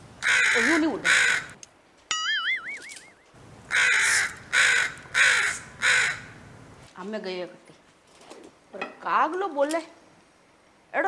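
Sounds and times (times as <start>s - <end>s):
crow cawing: 0.2s - 1.6s, 3.7s - 6.4s
warbling whistle-like tone: 2.1s - 3.3s.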